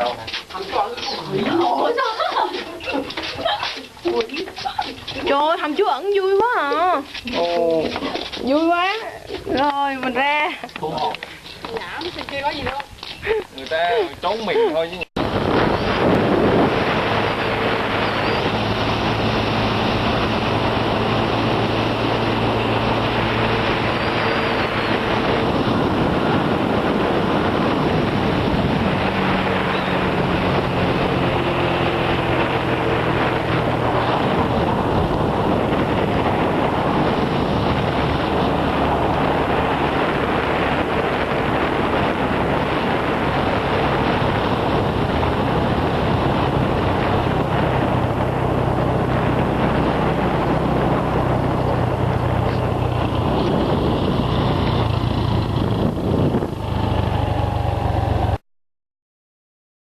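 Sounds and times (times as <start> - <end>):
wind noise on microphone: 0.0 - 58.4
engine running: 15.2 - 58.4.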